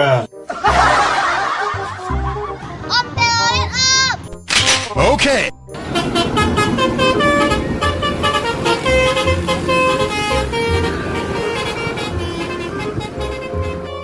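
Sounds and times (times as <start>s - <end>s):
multi-tone bus horn melody: 5.7s - 14.0s.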